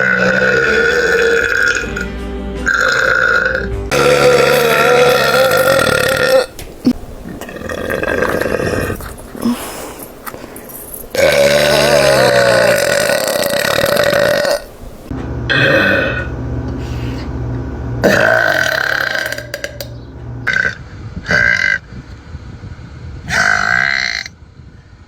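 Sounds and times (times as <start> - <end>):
person burping: 0.0 - 2.1, 2.7 - 9.7, 11.1 - 14.7, 15.5 - 16.3, 18.0 - 21.8, 23.3 - 24.3.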